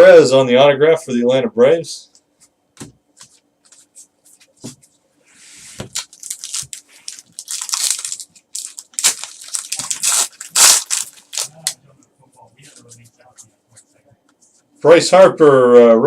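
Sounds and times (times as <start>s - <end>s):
foil wrapper tearing and crinkling: 5.9s - 11.8s.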